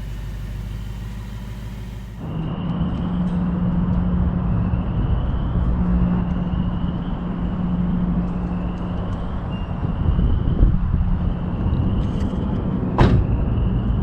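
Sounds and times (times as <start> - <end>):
car engine and exhaust droning: 0.0 - 2.5.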